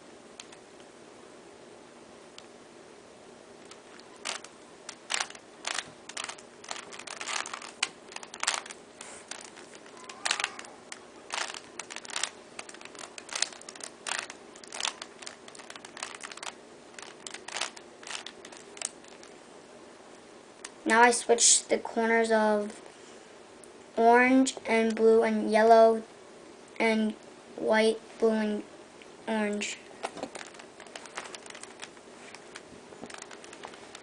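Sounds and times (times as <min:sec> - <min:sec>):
puzzle cube plastic clicks: 0:03.6 - 0:19.3, 0:30.0 - 0:34.0.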